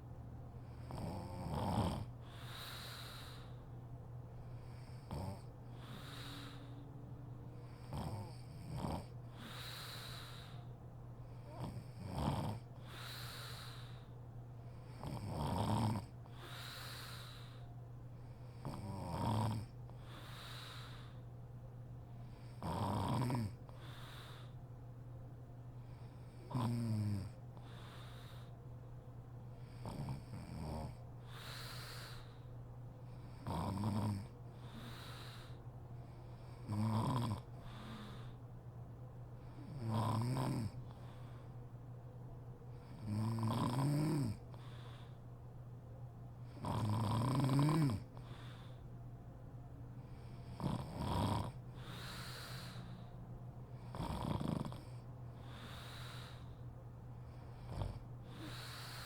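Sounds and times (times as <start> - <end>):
woman snoring: 0.8 - 3.5, 4.8 - 6.9, 7.7 - 10.6, 11.4 - 14.1, 14.9 - 17.6, 18.6 - 21.1, 22.5 - 24.6, 26.4 - 27.4, 29.7 - 32.3, 33.3 - 35.6, 36.6 - 38.4, 39.6 - 40.8, 42.9 - 44.4, 46.6 - 48.1, 50.5 - 52.8, 53.8 - 56.5, 57.6 - 59.0.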